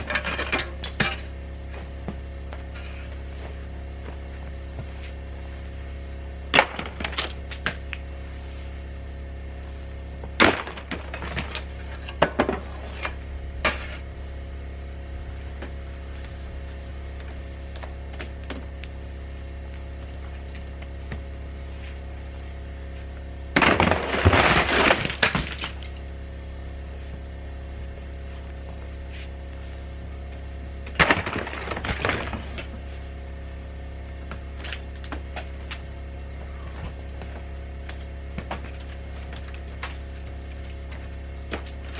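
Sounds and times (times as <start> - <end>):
low steady hum: 0.0 - 41.9
ice cracking on metal roof: 23.6 - 25.9, 30.9 - 32.6
ice crashing: 23.6 - 25.9.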